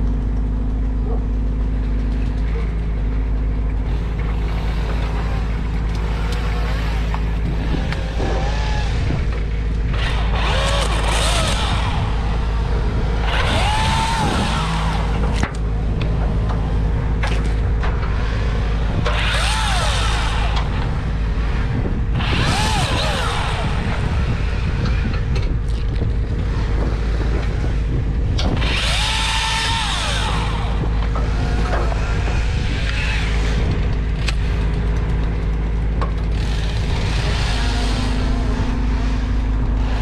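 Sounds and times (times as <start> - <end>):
low mechanical drone: 0.0 - 40.0
chainsaw cutting wood: 3.8 - 40.0.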